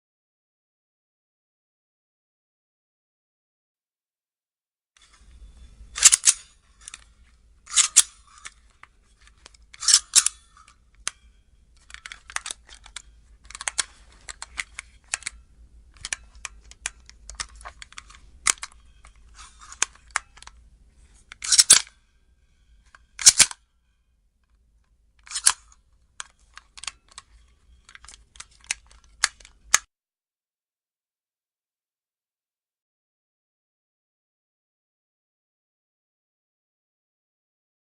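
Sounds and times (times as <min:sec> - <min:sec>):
firearm metallic clicks and clacks: 0:06.0 - 0:07.1, 0:07.7 - 0:20.6, 0:21.2 - 0:22.0, 0:22.9 - 0:23.6, 0:25.2 - 0:29.9.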